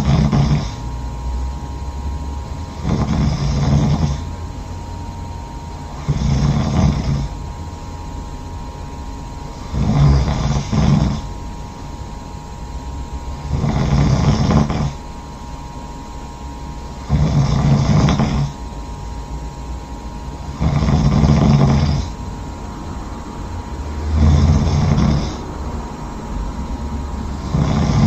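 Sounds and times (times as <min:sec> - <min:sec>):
person snoring loudly: 0:00.0 - 0:00.9, 0:02.7 - 0:04.4, 0:05.9 - 0:07.4, 0:09.5 - 0:11.3, 0:13.3 - 0:15.1, 0:17.0 - 0:18.6, 0:20.4 - 0:22.3, 0:23.8 - 0:25.6, 0:27.2 - 0:28.0.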